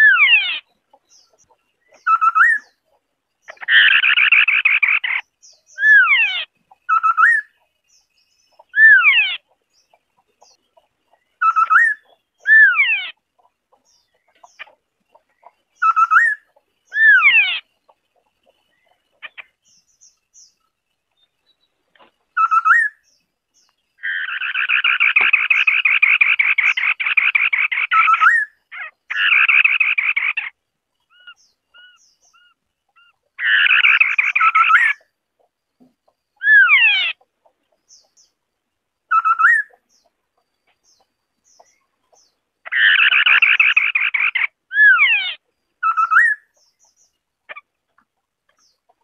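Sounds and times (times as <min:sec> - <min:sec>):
bird singing whistled notes: 0:00.0 - 0:02.8, 0:03.4 - 0:09.4, 0:11.1 - 0:13.1, 0:15.7 - 0:17.7, 0:22.4 - 0:35.1, 0:39.1 - 0:40.1, 0:45.8 - 0:47.2
bird chattering: 0:00.0 - 0:20.6, 0:22.3 - 0:23.0, 0:24.0 - 0:35.5, 0:36.3 - 0:38.4, 0:39.1 - 0:40.2, 0:40.8 - 0:49.0.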